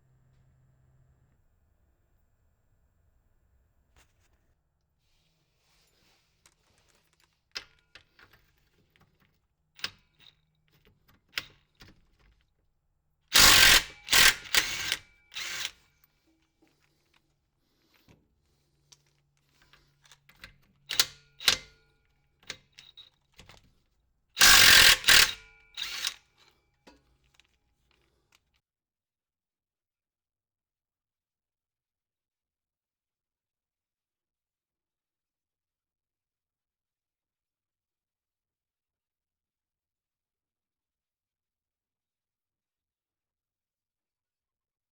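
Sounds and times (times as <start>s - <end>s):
power tool running on bolts: 13.3s - 15.8s, 24.4s - 26.2s
tools and hardware clicking: 13.3s - 15.9s, 18.9s - 23.8s, 24.4s - 27.5s.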